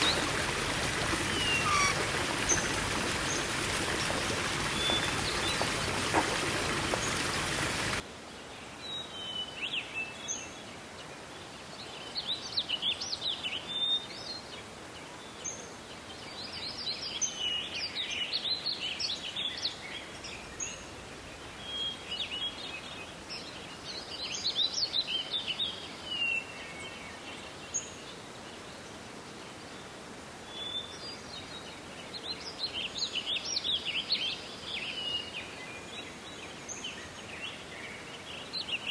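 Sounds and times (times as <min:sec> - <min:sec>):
parrots chirping: 0:00.0 - 0:06.2
faint steady hiss: 0:00.0 - 0:38.9.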